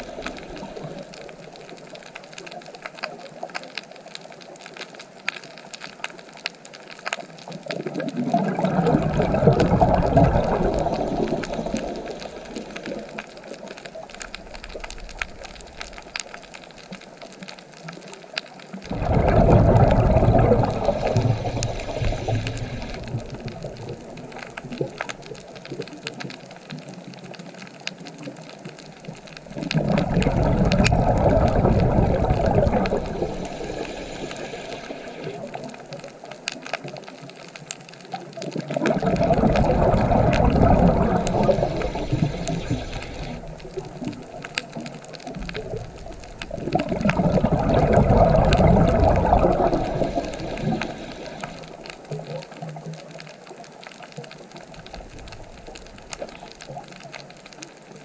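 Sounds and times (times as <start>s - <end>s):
ocean waves breaking on shore: 18.8s - 25.2s, 29.4s - 35.7s, 38.7s - 52.4s.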